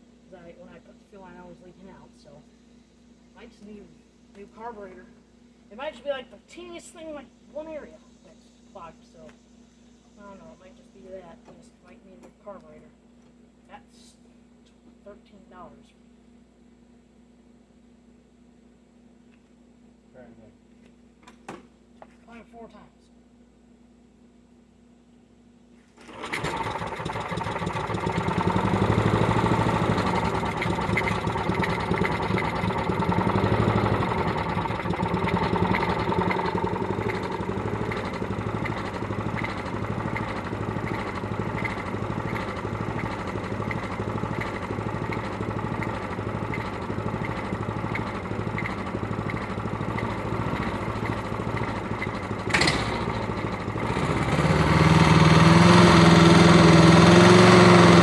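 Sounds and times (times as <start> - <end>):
lawn mower engine running: 26.0 - 58.0.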